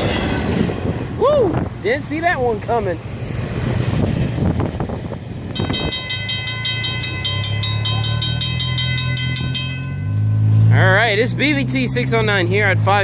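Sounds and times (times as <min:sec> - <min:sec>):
freight train rumbling past: 0:00.0 - 0:13.0
crossing warning bell ringing: 0:05.5 - 0:12.4.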